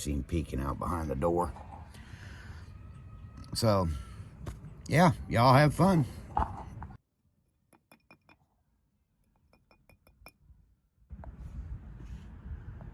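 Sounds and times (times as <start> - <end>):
faint ringing clinks: 9.3 - 10.5.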